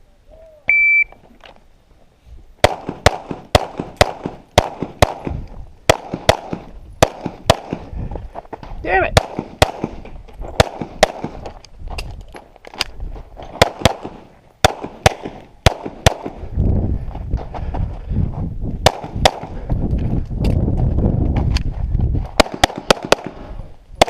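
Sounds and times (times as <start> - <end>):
pistol shots: 2.6 - 7.9, 9.2 - 11.4, 13.5 - 16.4, 18.8 - 19.5, 22.4 - 23.5.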